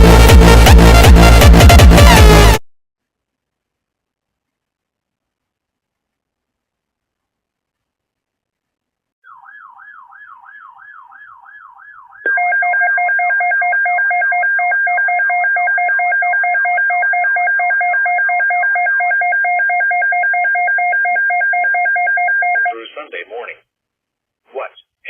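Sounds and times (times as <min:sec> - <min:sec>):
faint warbling tone: 0:09.2 - 0:12.8.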